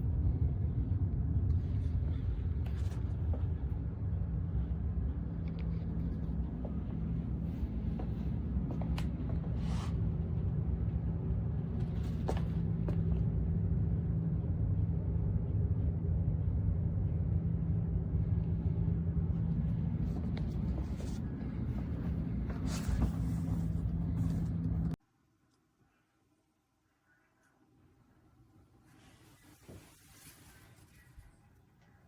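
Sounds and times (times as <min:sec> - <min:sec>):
low machine hum: 0:00.0 - 0:25.0.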